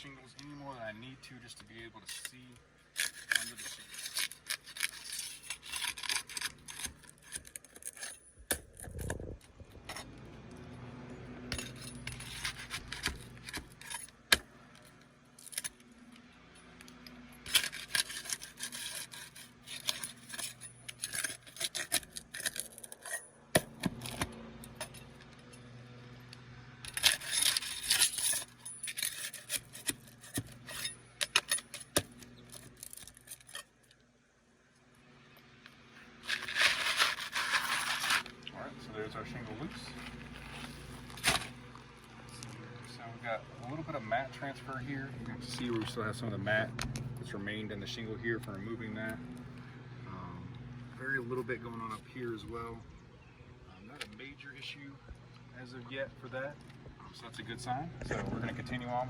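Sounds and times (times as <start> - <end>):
metal tool scraping roof shingles: 2.0 - 8.8, 11.5 - 14.5, 17.4 - 24.2, 26.8 - 33.8, 36.0 - 38.4, 39.7 - 41.6.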